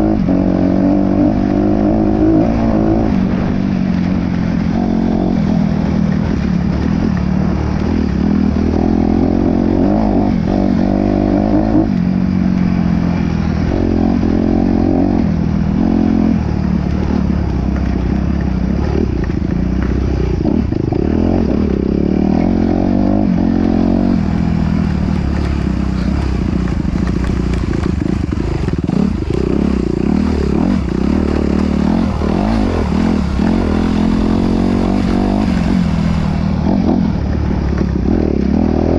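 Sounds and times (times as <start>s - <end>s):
off-road vehicle engine revving: 0.0s - 38.9s.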